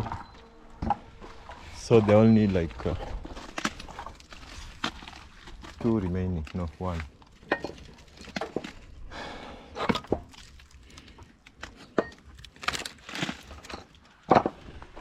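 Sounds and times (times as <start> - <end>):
footsteps: 0.0 - 6.0.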